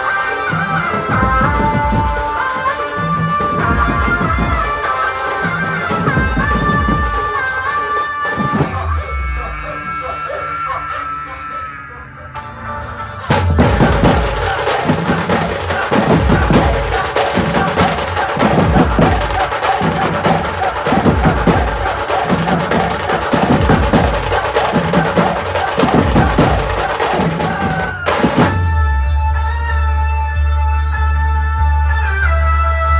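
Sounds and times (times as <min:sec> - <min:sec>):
fast dense drumming: 0:03.4 - 0:07.4, 0:13.3 - 0:28.8.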